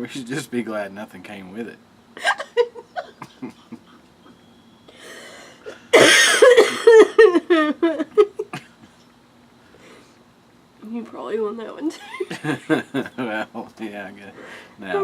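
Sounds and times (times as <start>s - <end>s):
person laughing: 2.2s - 4.4s, 6.0s - 8.8s.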